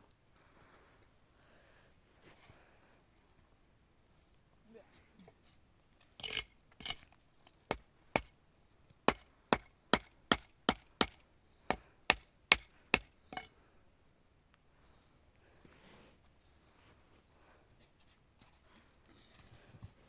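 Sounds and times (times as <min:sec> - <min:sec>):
tool striking wood: 0:12.1 - 0:13.5.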